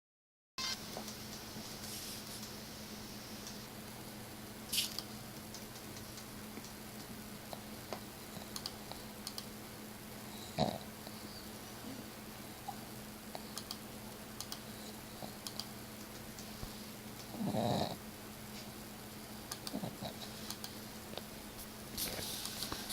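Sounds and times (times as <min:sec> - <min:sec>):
cat snoring: 0:10.4 - 0:10.9, 0:17.3 - 0:18.0.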